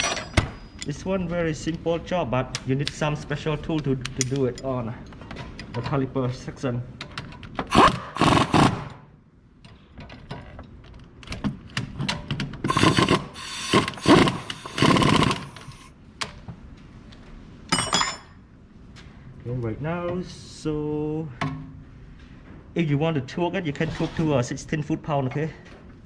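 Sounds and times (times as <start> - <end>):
wrench clicking and scraping: 12.6 - 15.9.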